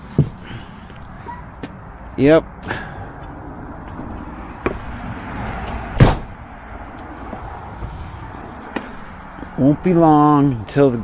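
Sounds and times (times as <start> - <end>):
sharp knock: 6.0 - 6.3.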